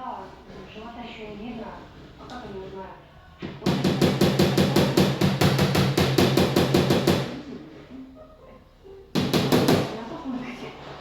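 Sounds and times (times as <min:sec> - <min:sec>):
hammer tapping sheet metal: 0:03.6 - 0:07.4, 0:09.2 - 0:10.0.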